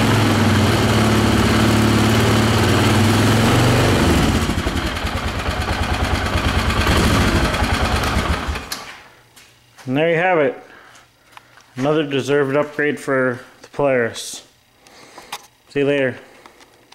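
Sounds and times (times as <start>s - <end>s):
engine running and idling: 0.0s - 8.8s.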